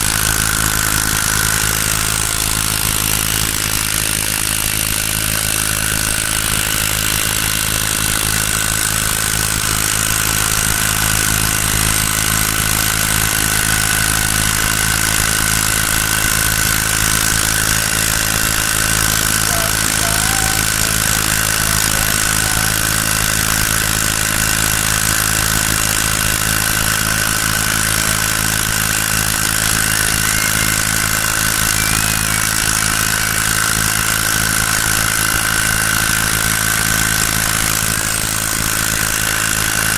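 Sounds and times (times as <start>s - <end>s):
small boat motor running: 0.0s - 39.9s.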